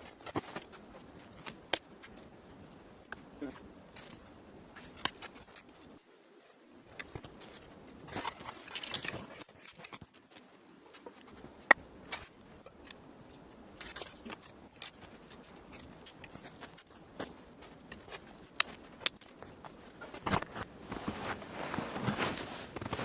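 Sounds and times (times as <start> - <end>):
dry sticks snapping: 13.8 - 19.7.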